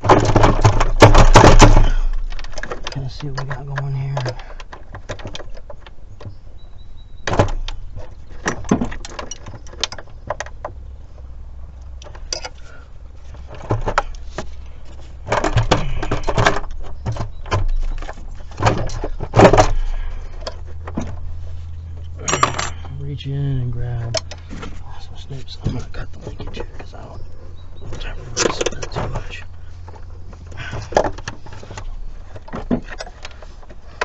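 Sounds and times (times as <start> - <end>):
steady low rumble: 5.9 - 34.0
metal tools clinking: 12.1 - 12.7, 22.0 - 23.0.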